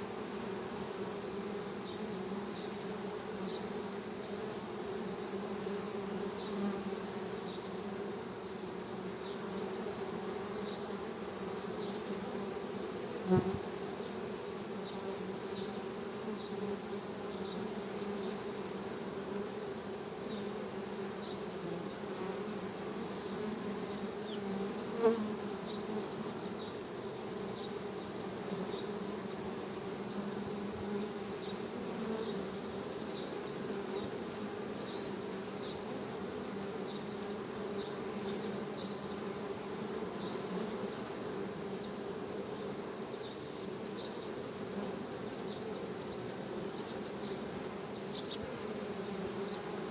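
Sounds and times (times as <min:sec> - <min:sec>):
honeybees buzzing: 0:00.0 - 0:49.9.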